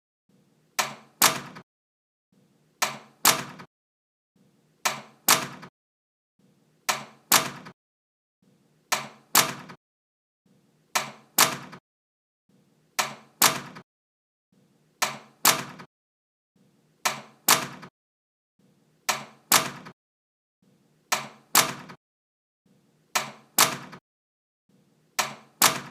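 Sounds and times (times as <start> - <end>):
door closing: 0.8 - 1.6, 2.8 - 3.7, 4.8 - 5.7, 6.9 - 7.8, 8.9 - 9.8, 10.9 - 11.8, 13.0 - 13.8, 15.0 - 15.9, 17.0 - 17.9, 19.1 - 20.0, 21.1 - 22.0, 23.1 - 24.0, 25.2 - 25.9.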